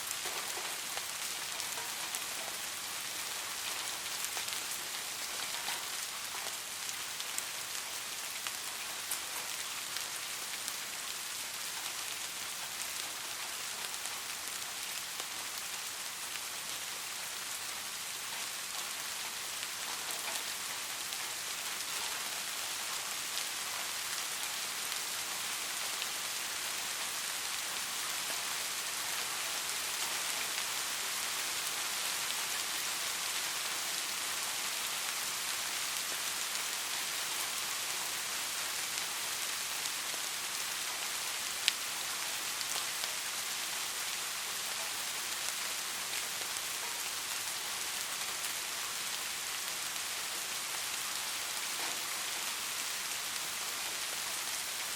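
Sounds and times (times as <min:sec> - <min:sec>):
soft rain hissing: 0:00.0 - 0:54.9
raindrop ticks: 0:00.1 - 0:02.8, 0:03.6 - 0:07.8, 0:18.3 - 0:24.1.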